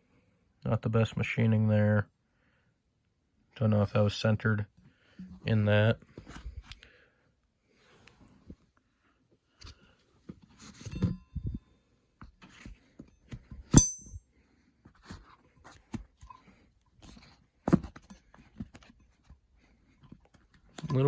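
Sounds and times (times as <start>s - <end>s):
ringing metallic clink: 13.8s - 14.2s.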